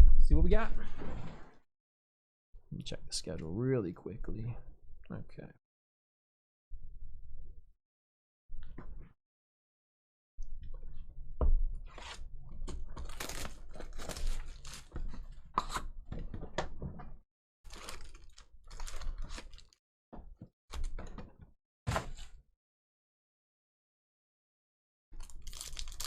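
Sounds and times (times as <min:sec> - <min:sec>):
wrapping being torn and crinkled: 0:13.0 - 0:15.0, 0:17.7 - 0:19.8, 0:25.2 - 0:26.0.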